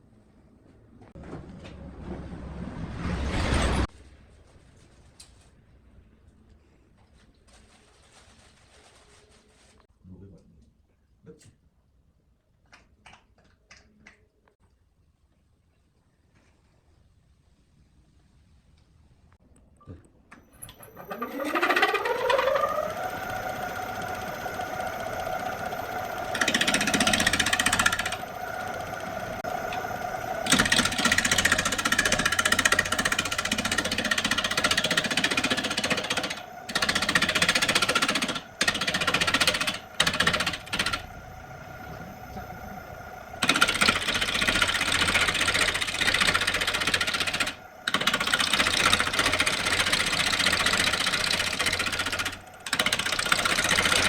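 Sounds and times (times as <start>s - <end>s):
wood lathe motor whine: 20.6s - 54.0s
turning tool chattering on wood: 21.0s - 41.1s, 43.4s - 54.0s.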